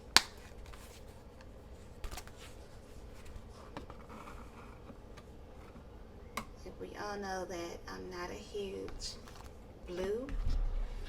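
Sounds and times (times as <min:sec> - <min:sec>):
paper rustling: 0:00.2 - 0:05.8, 0:09.1 - 0:09.6.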